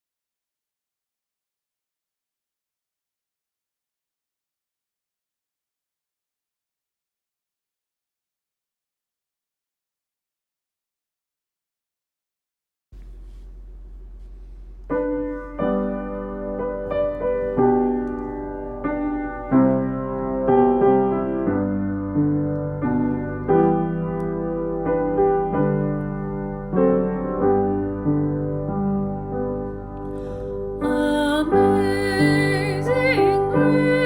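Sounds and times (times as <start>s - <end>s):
low steady hum: 13.0s - 20.4s
piano playing slow chords: 13.7s - 34.0s.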